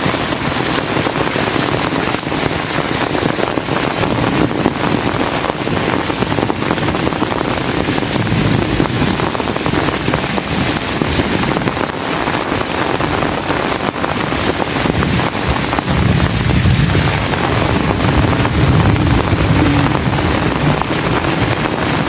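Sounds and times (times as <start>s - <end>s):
heavy rain pouring: 0.0s - 22.0s
wind buffeting microphone: 0.0s - 22.0s
low rumble: 14.9s - 22.0s.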